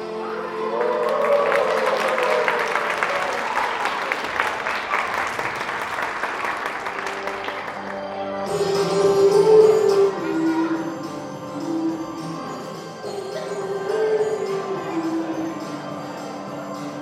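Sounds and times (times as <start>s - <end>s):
audience applauding: 0.0s - 8.2s
music: 0.0s - 17.0s.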